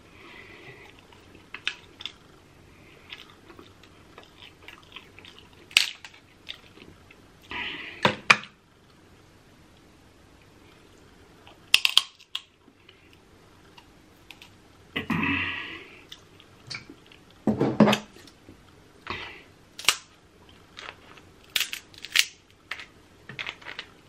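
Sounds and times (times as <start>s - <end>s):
chewing and lip smacking: 3.0s - 7.5s
crab shell cracking: 11.5s - 12.5s, 19.8s - 20.1s, 20.8s - 22.9s.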